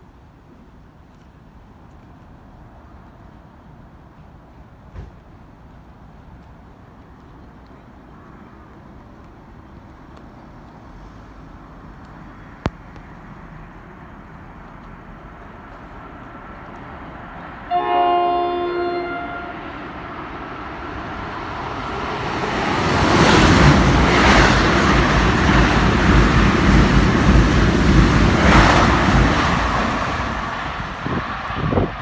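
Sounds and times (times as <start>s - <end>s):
train wheels rumbling on rails: 13.8s - 32.0s
train horn blast: 17.7s - 20.1s.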